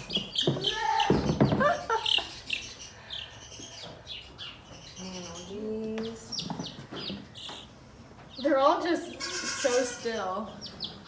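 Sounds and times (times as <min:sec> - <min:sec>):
chicks peeping: 0:00.0 - 0:11.0.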